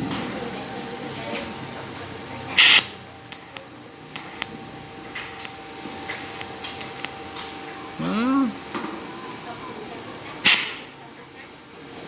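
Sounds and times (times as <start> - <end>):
faint hum: 2.4 - 11.9
welder zapping: 2.6 - 3.5, 4.1 - 7.2, 10.4 - 11.0
short welder snaps: 2.6 - 4.5, 5.1 - 7.2, 10.4 - 11.0.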